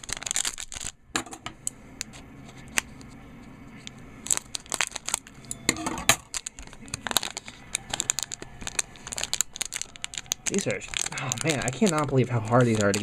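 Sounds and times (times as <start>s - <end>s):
card pack wrapper tearing and crinkling: 0.0s - 1.0s, 4.2s - 13.0s.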